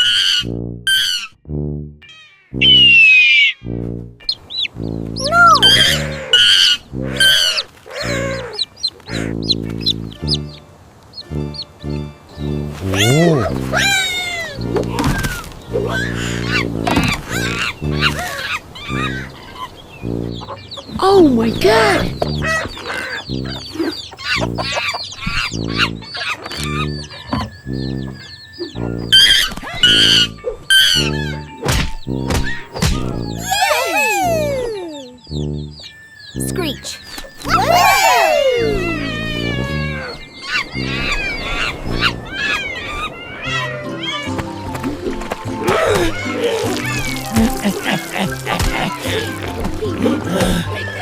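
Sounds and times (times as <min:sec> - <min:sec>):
low pulsing note: 0:00.4 - 0:03.0
background music: 0:02.6 - 0:51.0.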